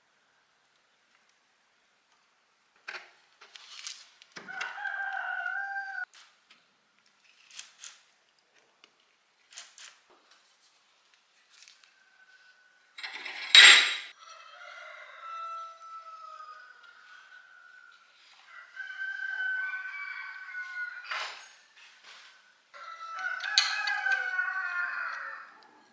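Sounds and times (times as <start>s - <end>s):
rooster crowing: 4.4s - 6.1s, 14.2s - 21.6s, 22.8s - 25.9s.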